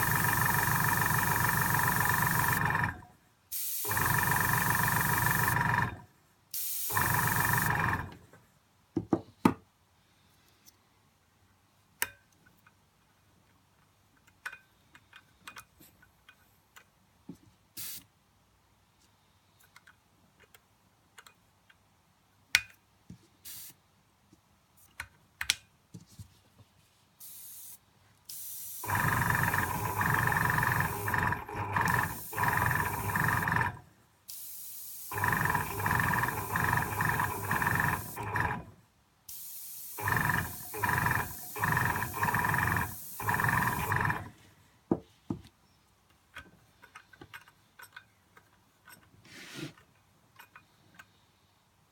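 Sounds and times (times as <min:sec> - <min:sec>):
airbrush compressor humming: 0:00.0 - 0:03.0, 0:03.8 - 0:06.0, 0:06.9 - 0:08.1, 0:28.3 - 0:44.3
air hissing: 0:03.5 - 0:05.6, 0:06.5 - 0:07.8, 0:23.4 - 0:23.8, 0:27.2 - 0:33.7, 0:34.3 - 0:38.6, 0:39.3 - 0:44.3.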